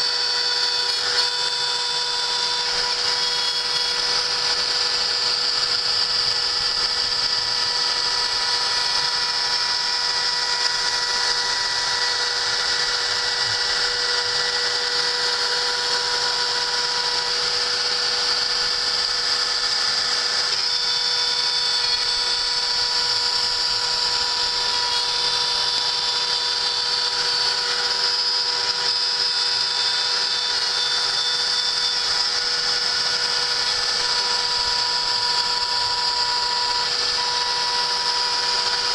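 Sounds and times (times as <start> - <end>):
cnc machine motor whine: 0.0 - 38.9.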